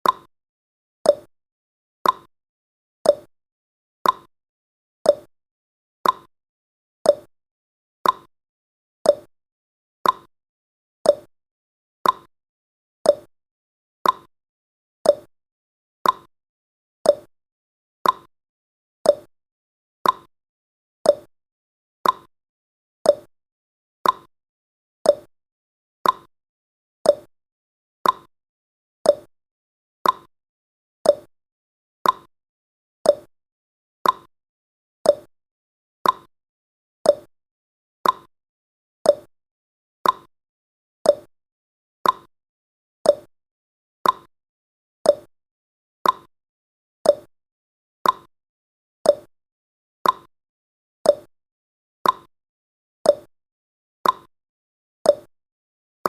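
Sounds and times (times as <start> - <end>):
countdown timer blips: 1.1 - 1.3, 3.1 - 3.3, 5.1 - 5.3, 6.0 - 6.3, 7.1 - 7.3, 8.0 - 8.3, 9.1 - 9.3, 10.0 - 10.3, 11.1 - 11.3, 12.0 - 12.3, 13.1 - 13.3, 14.0 - 14.3, 15.1 - 15.3, 16.0 - 16.3, 17.1 - 17.3, 18.0 - 18.3, 19.1 - 19.3, 20.0 - 20.3, 21.1 - 21.3, 22.0 - 22.3, 23.1 - 23.3, 24.0 - 24.3, 25.1 - 25.3, 26.0 - 26.3, 27.1 - 27.3, 28.0 - 28.3, 29.0 - 29.3, 30.0 - 30.3, 31.0 - 31.3, 32.0 - 32.3, 33.0 - 33.3, 34.0 - 34.3, 35.1 - 35.3, 36.0 - 36.3, 37.1 - 37.3, 38.0 - 38.3, 39.1 - 39.3, 40.0 - 40.3, 41.0 - 41.3, 42.0 - 42.3, 43.1 - 43.3, 44.0 - 44.3, 45.1 - 45.3, 46.0 - 46.3, 47.0 - 47.3, 48.0 - 48.3, 49.1 - 49.3, 50.0 - 50.3, 51.1 - 51.3, 52.0 - 52.3, 53.1 - 53.3, 54.0 - 54.3, 55.1 - 55.3.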